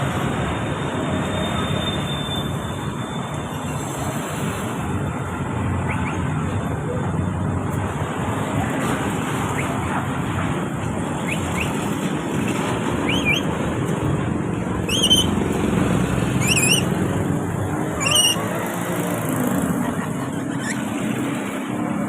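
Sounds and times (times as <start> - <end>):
parrots squawking: 13.0 - 13.5, 14.9 - 15.4, 16.4 - 16.9, 18.0 - 18.5, 19.8 - 21.2.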